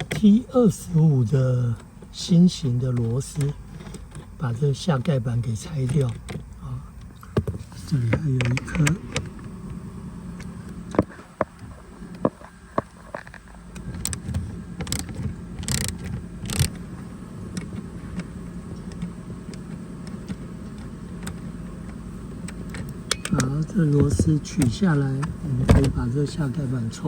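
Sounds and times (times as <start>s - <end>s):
steady low hum: 0.0s - 27.0s.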